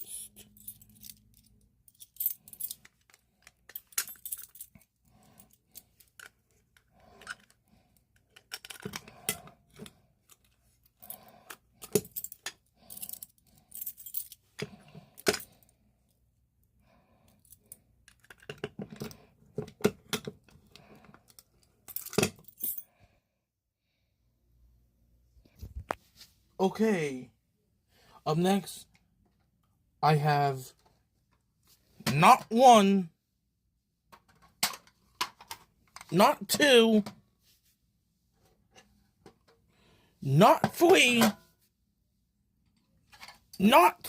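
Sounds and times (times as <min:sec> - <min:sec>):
keys jangling: 0:00.0 - 0:04.8.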